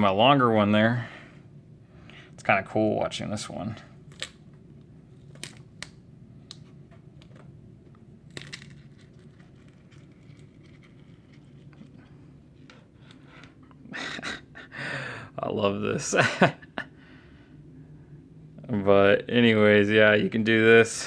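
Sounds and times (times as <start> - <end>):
low room hum: 0.0 - 21.0
light handling clicks and crinkles: 3.8 - 13.6.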